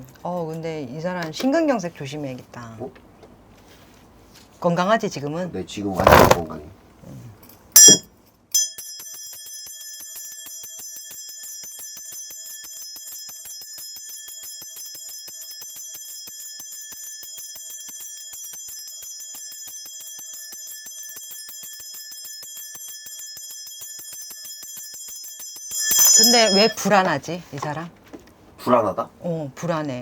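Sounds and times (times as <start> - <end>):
small bells jingling: 7.8 - 27.6.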